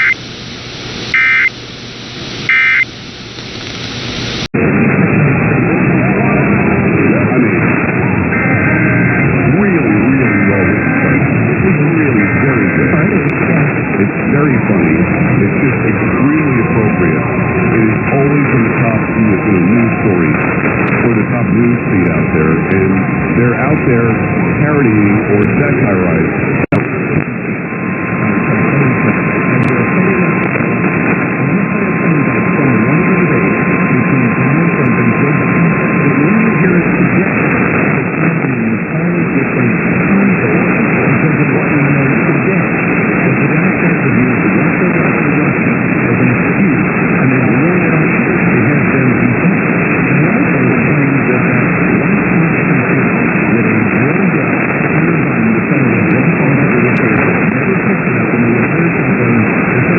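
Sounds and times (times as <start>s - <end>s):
radio static hiss: 0.0s - 59.9s
faint steady whistle: 2.4s - 2.9s.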